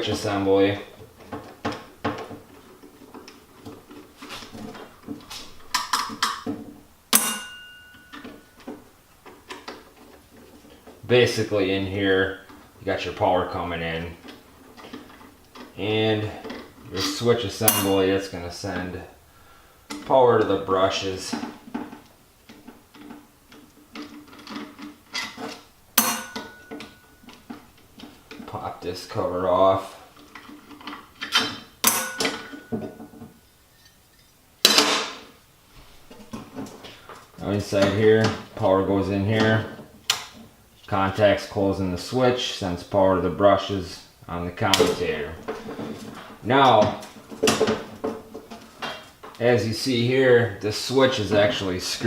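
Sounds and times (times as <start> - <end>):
sharp metallic clink: 7.1 - 8.2, 17.7 - 18.0, 26.0 - 27.0, 31.8 - 32.7
sharp metallic clank: 7.1 - 8.4, 17.0 - 18.1, 26.0 - 27.1, 31.3 - 32.9
metal tools clicking and knocking: 7.2 - 8.8, 17.6 - 18.1, 23.9 - 27.6, 30.4 - 35.1.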